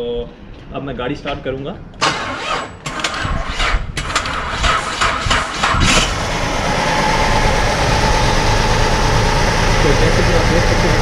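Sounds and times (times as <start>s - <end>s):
car engine cranking: 2.0s - 11.0s
car engine idling roughly: 6.2s - 11.0s.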